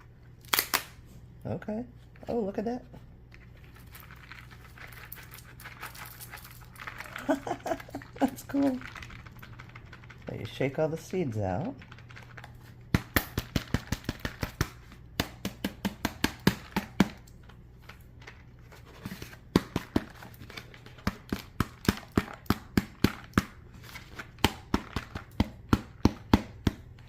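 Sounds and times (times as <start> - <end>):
seeds rattling in dried gourd: 3.5 - 12.6.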